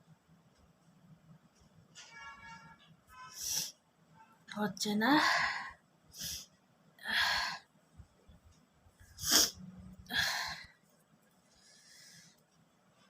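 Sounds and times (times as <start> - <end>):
person sniffing and snorting: 9.2 - 9.6.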